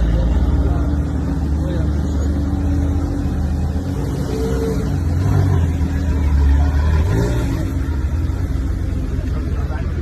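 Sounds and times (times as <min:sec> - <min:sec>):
car engine droning: 0:00.0 - 0:10.0.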